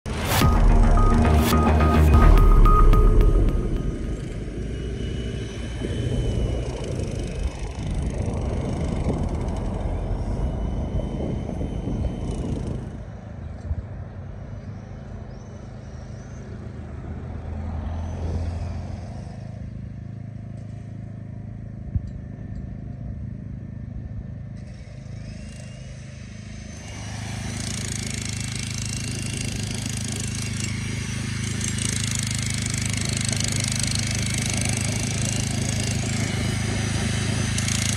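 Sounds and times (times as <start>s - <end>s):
machinery engines humming: 0.0s - 37.9s.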